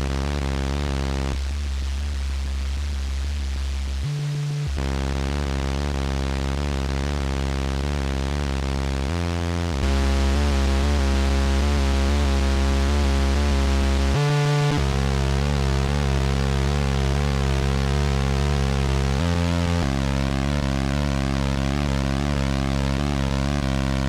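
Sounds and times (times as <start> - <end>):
buzzy synthesiser bass notes: 0.0 - 24.0.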